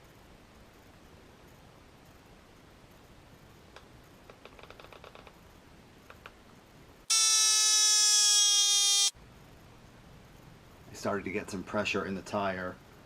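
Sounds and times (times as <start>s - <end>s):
inflator buzzing whine: 7.1s - 9.1s.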